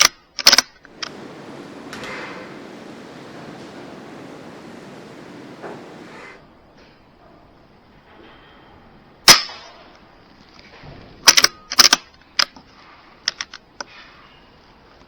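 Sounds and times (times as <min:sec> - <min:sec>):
air rifle shot: 0:00.9 - 0:06.4.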